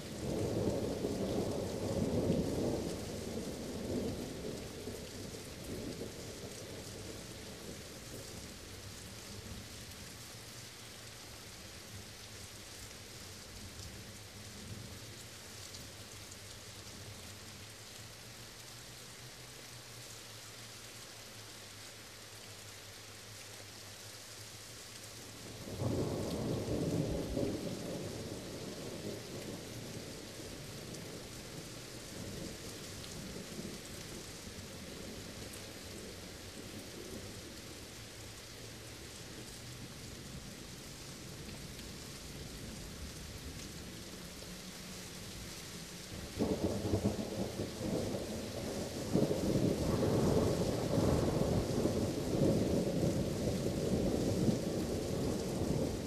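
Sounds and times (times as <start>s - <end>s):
steady rain: 0.0s - 56.0s
rolling thunder: 46.3s - 56.0s.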